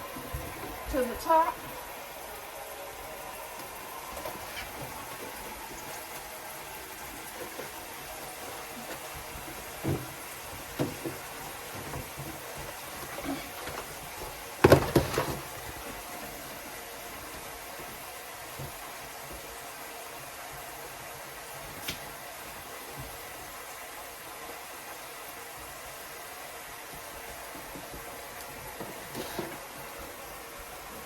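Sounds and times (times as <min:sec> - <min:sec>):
knocks in a refrigerator: 0:14.6 - 0:15.4.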